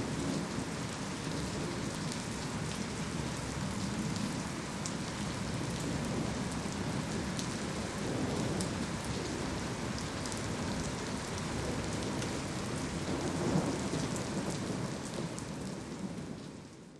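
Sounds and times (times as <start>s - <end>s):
heavy rain pouring: 0.0s - 16.9s
raindrops ticking on surfaces: 0.0s - 16.9s
low rumble of thunder: 5.3s - 16.4s.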